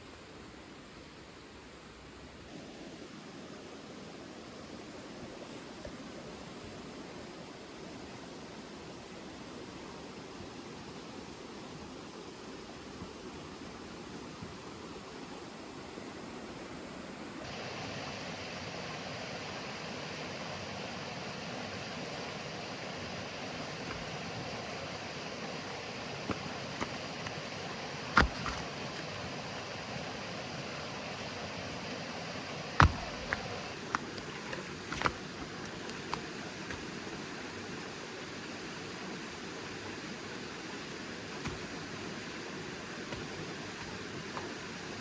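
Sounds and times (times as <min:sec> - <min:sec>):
stream flowing: 0:00.0 - 0:45.0
sharp knocks: 0:32.8 - 0:33.4.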